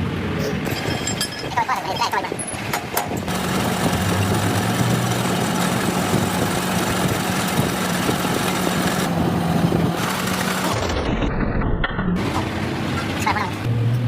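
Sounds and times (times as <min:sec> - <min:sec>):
machine running: 0:03.3 - 0:11.6.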